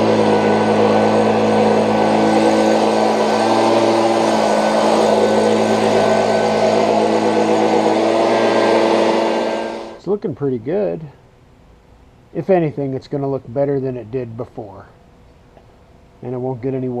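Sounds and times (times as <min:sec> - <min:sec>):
leaf blower running: 0:00.0 - 0:10.0.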